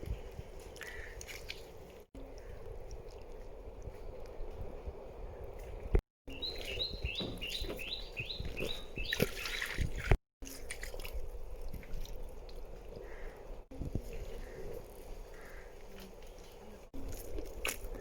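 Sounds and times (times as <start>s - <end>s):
water splashing and trickling: 0.0s - 4.6s, 5.6s - 18.0s
bird calling: 6.3s - 9.7s.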